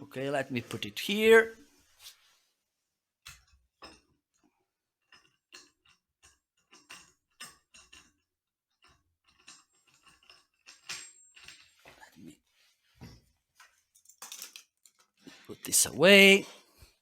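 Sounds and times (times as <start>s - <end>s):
metal clamp clicks and knocks: 3.2s - 4.2s, 5.0s - 12.0s.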